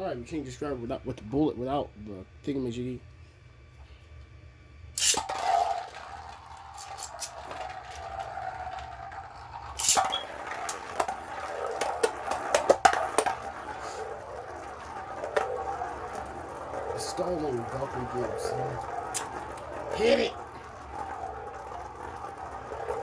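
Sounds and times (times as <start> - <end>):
plastic tops colliding: 5.0 - 23.0
spinning tops launch clack: 5.0 - 23.0
spinning tops whirring: 5.0 - 23.0.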